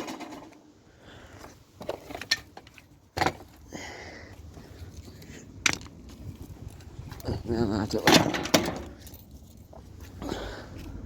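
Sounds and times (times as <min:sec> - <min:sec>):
knocks and clicks of metal parts: 0:08.0 - 0:09.3.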